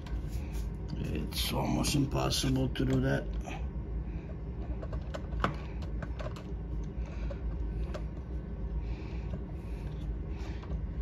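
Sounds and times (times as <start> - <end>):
fingers clicking and tapping parts: 4.7 - 8.2.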